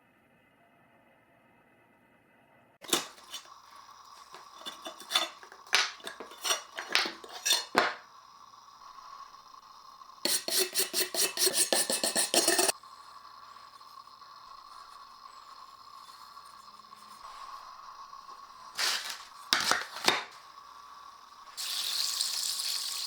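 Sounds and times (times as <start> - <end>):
fast scraping strokes: 2.8 - 8.0, 10.3 - 12.8.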